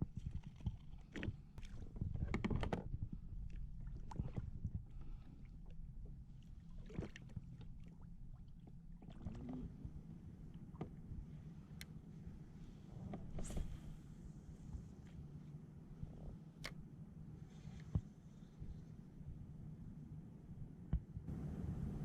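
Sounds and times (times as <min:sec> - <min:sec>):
knocks and rattles on a kayak: 0:00.0 - 0:05.3, 0:08.6 - 0:10.0, 0:10.6 - 0:11.2
low rumble: 0:21.3 - 0:22.0.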